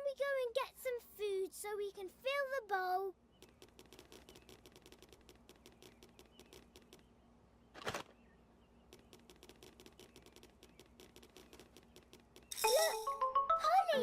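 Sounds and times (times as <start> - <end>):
rapid irregular clicking: 3.4 - 7.1, 8.8 - 12.6.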